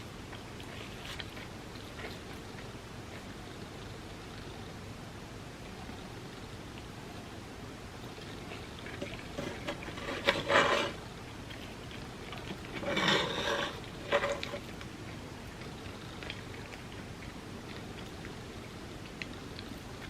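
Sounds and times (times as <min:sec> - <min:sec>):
biting and chewing: 0:00.0 - 0:04.7, 0:08.0 - 0:20.0.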